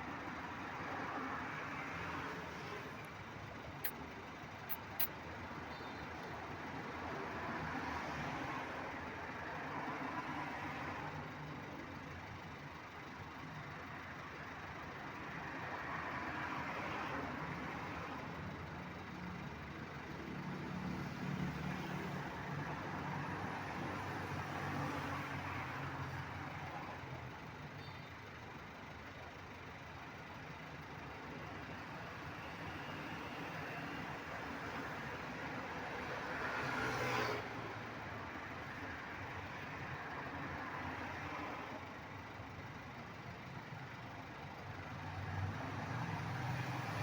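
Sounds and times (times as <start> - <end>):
vehicles passing: 33.2 - 42.6, 44.2 - 47.0.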